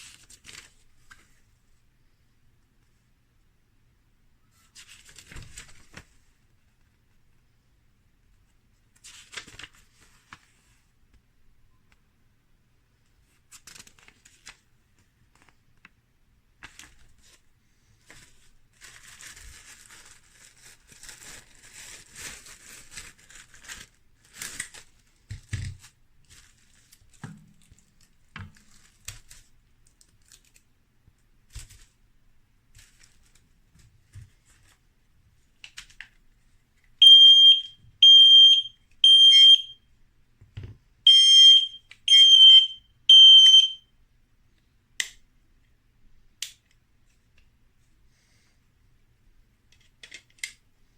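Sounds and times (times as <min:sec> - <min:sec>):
faint rustling and crinkling: 0:00.0 - 0:01.9, 0:04.4 - 0:07.6, 0:08.3 - 0:11.2, 0:13.0 - 0:37.0
smoke detector alarm beeps: 0:37.0 - 0:39.8, 0:41.1 - 0:43.9.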